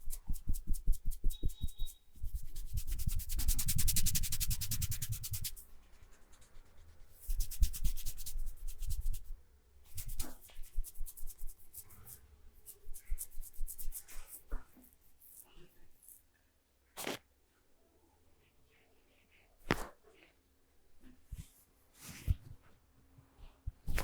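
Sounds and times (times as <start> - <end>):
hands rubbing and patting skin: 0.0 - 16.2, 17.0 - 17.2, 19.6 - 19.9, 23.8 - 24.0.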